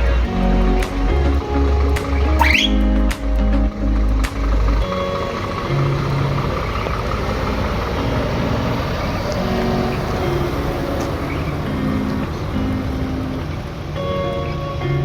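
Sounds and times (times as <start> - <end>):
truck diesel engine rumbling: 0.0 - 15.0
short held horn notes: 2.4 - 2.9.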